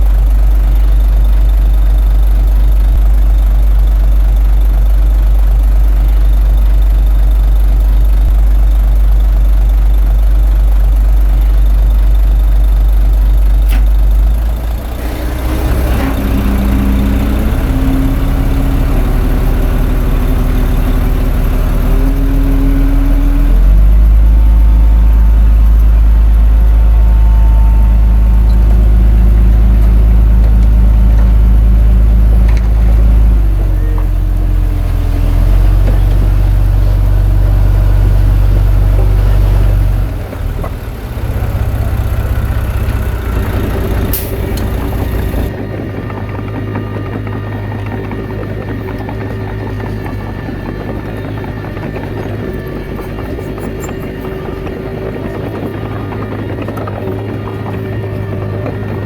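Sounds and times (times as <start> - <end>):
bulldozer diesel engine: 0.0 - 59.0.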